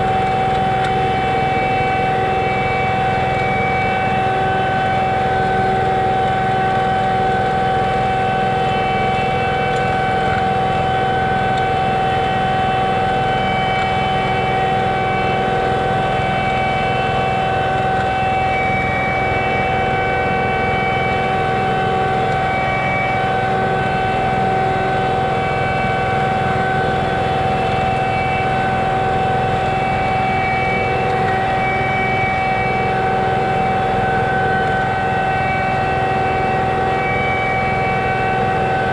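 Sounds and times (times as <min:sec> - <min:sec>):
steady whine: 0:00.0 - 0:38.9.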